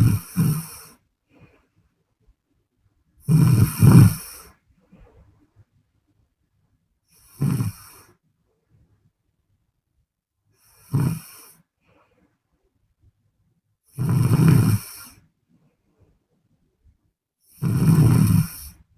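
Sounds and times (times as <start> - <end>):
woman snoring: 0.0 - 1.0, 3.2 - 4.5, 7.2 - 8.1, 10.6 - 11.6, 13.9 - 15.2, 17.5 - 18.9.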